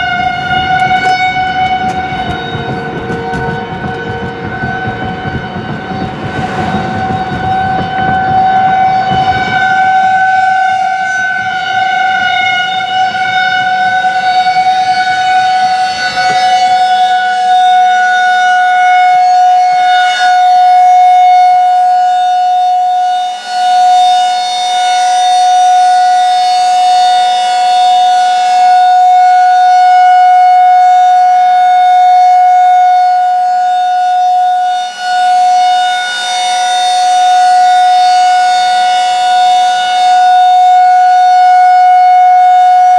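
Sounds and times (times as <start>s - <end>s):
outdoor warning siren: 0.0s - 42.9s
low rumble: 0.2s - 10.4s.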